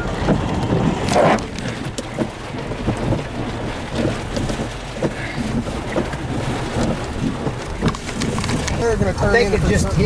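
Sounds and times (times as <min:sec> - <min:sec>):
low rumble: 0:00.0 - 0:09.2
rain hitting a vehicle: 0:00.0 - 0:10.0.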